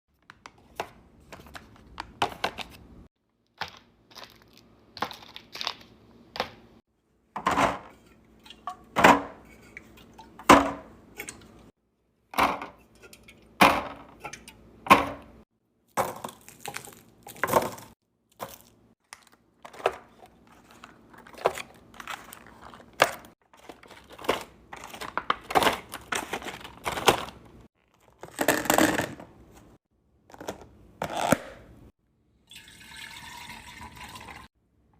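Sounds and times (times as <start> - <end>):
containers and bottles clattering: 7.4 - 11.7, 16.0 - 29.3
plastic packaging crinkling: 16.2 - 28.4.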